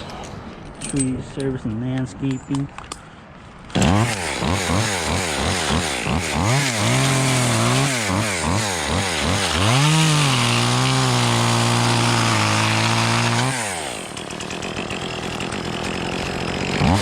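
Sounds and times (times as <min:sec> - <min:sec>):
chainsaw engine revving: 0:03.7 - 0:17.0.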